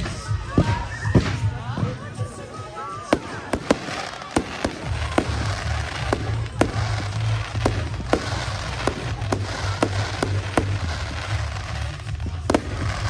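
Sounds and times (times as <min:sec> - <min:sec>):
fireworks bangs: 0:00.6 - 0:13.0
hissing crackle: 0:03.1 - 0:13.0.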